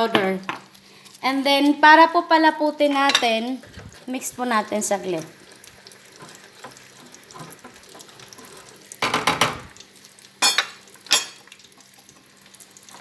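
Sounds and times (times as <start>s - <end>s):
chicken sizzling in oil: 0.0s - 13.0s
spoon stirring gravy: 3.0s - 9.0s.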